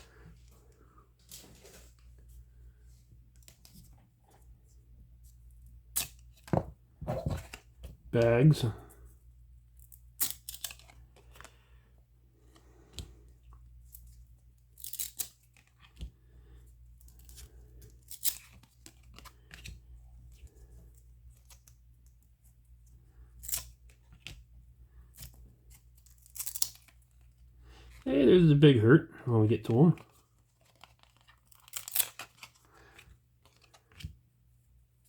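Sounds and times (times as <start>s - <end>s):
card pack wrapper rustling: 10.2s - 11.6s, 29.9s - 34.1s.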